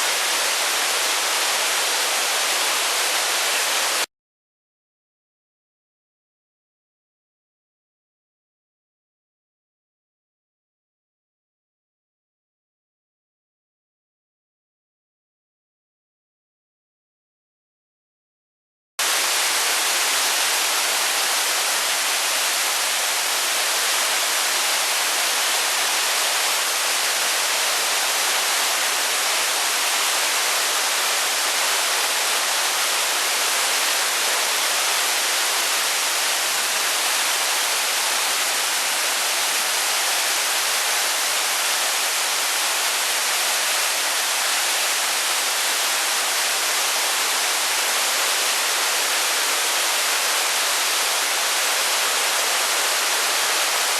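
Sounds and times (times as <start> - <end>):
waterfall rushing water: 0.0 - 4.1, 19.0 - 53.9.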